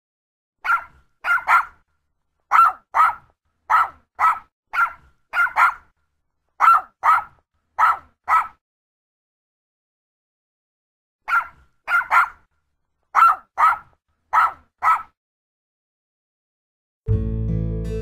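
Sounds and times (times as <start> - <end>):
small dog barking: 0.6 - 1.8, 2.5 - 5.9, 6.6 - 8.6, 11.2 - 12.5, 13.1 - 15.2.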